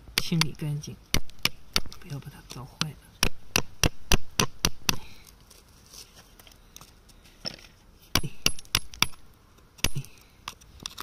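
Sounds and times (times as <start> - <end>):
hammer and chisel striking rock: 0.2 - 2.2, 2.8 - 5.1, 7.5 - 9.2, 9.8 - 10.1.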